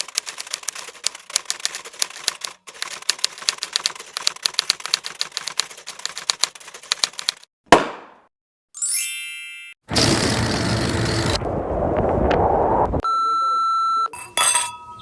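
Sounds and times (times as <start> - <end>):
typewriter keys clacking: 0.0 - 7.4.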